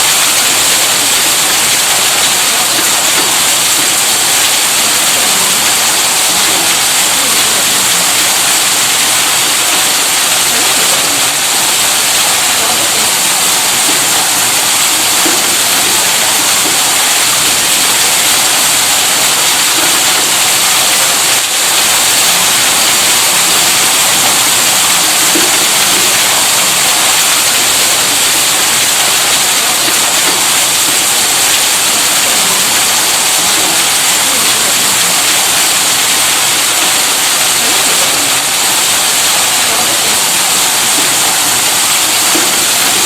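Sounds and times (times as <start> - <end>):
gushing water rushing: 0.0 - 43.0.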